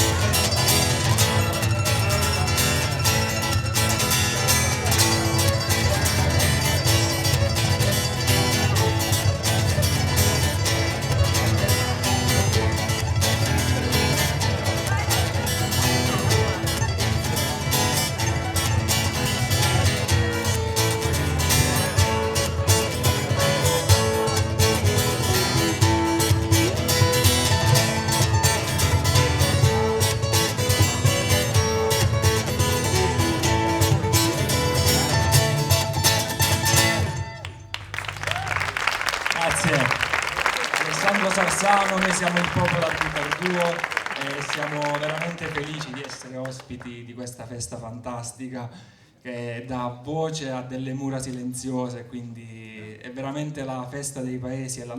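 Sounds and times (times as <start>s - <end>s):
ukulele: 0.0s - 38.7s
acoustic guitar: 0.0s - 47.0s.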